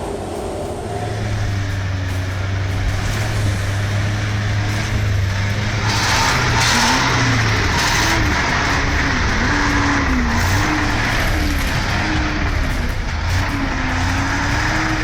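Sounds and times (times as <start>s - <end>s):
heavy diesel engine revving: 0.0s - 15.0s
rushing grinding noise: 0.0s - 15.0s.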